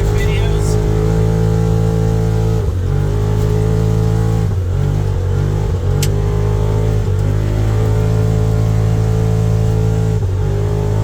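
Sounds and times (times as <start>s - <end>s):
engine running hard: 0.0s - 11.0s.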